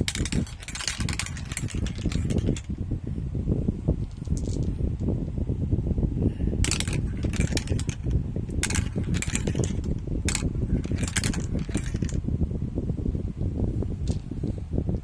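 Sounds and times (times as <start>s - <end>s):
marbles clicking: 0.0s - 2.8s, 4.1s - 4.7s, 6.6s - 12.2s
marbles rolling and rattling: 0.0s - 2.8s, 4.0s - 4.7s, 6.6s - 12.2s, 14.0s - 14.2s.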